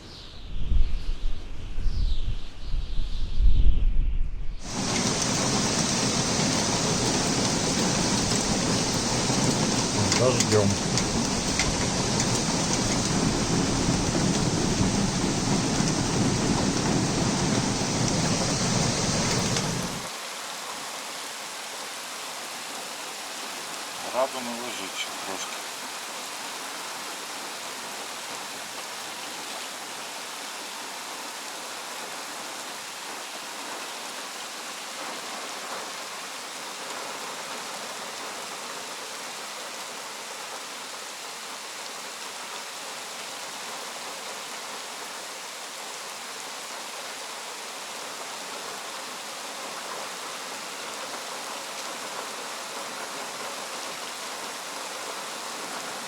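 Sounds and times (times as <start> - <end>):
heavy rain pouring: 4.6 - 56.0.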